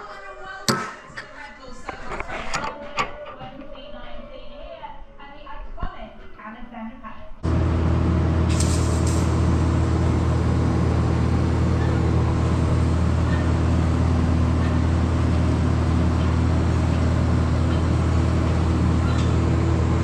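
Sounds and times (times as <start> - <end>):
steady mechanical hum: 0.0 - 20.0.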